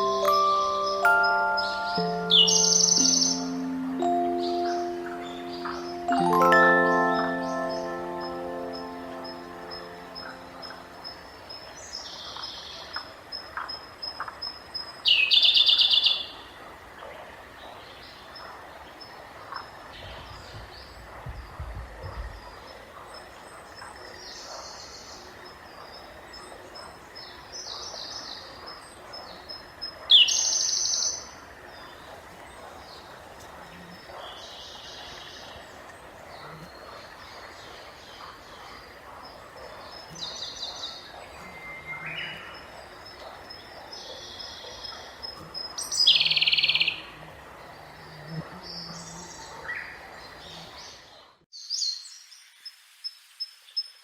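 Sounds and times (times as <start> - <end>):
babbling stream: 0.0 - 11.6
songbirds chirping: 0.0 - 16.5, 22.2 - 52.4.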